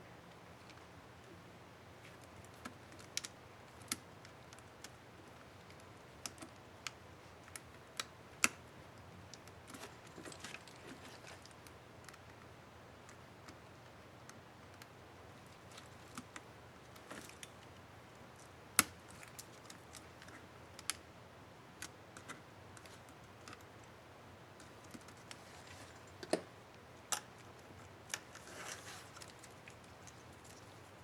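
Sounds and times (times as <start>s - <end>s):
scratchy rustle: 28.3s - 31.0s.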